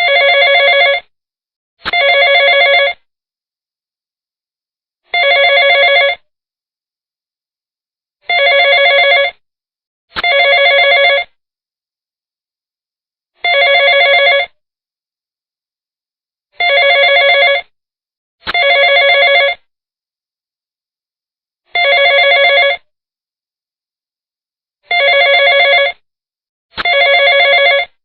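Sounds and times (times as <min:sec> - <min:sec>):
telephone ringing: 0:00.0 - 0:01.1, 0:01.9 - 0:03.0, 0:05.1 - 0:06.2, 0:08.3 - 0:09.4, 0:10.2 - 0:11.3, 0:13.4 - 0:14.6, 0:16.6 - 0:17.7, 0:18.5 - 0:19.6, 0:21.8 - 0:22.9, 0:24.9 - 0:26.0, 0:26.8 - 0:28.0.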